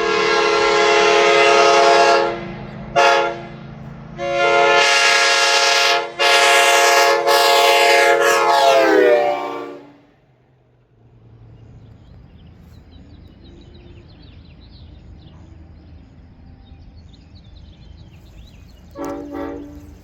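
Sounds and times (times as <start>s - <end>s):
locomotive air horn toot: 0.0s - 3.6s, 4.2s - 10.1s, 18.9s - 20.0s
birds chirping: 11.0s - 20.0s.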